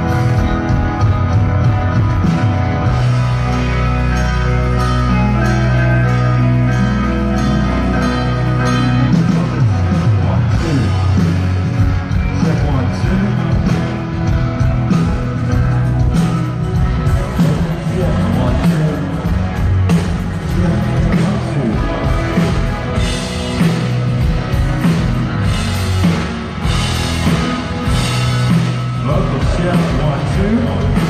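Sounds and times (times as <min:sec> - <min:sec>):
electric guitar: 0:00.0 - 0:31.0
rock band playing: 0:00.0 - 0:31.0.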